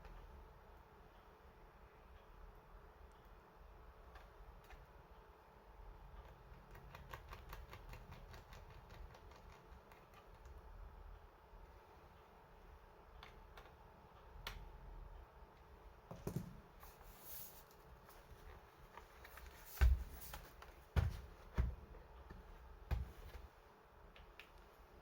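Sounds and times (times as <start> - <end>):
clicks and knocks handling laptop: 16.1 - 16.7, 19.0 - 23.5.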